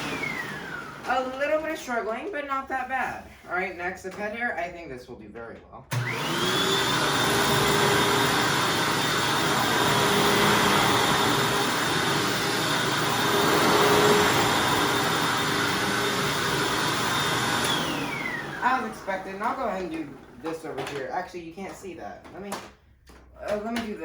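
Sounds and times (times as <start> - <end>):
vacuum cleaner motor whine: 0.0 - 1.5, 5.9 - 20.6.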